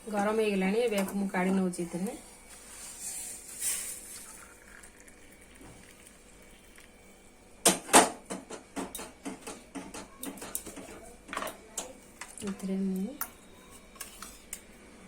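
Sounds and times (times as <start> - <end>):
liquid poured into a cup: 3.7 - 7.0.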